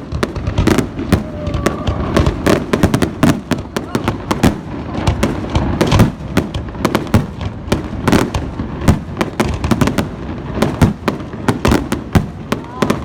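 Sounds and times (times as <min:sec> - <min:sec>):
fireworks booms and crackling bangs: 0:00.0 - 0:13.0.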